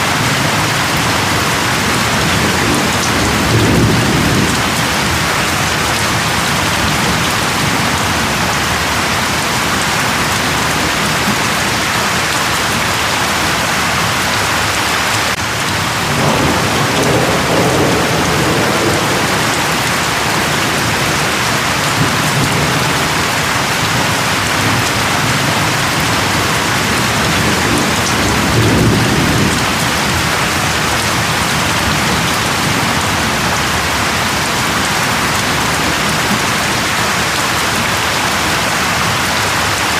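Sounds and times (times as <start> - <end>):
thunder rumbles: 0.0 - 12.9, 15.3 - 39.2
steady rain falling: 0.0 - 39.9.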